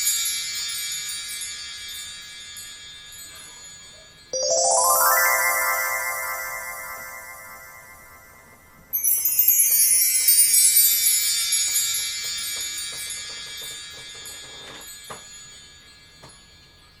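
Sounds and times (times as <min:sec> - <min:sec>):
high chiming bell tones: 0:04.4 - 0:10.5.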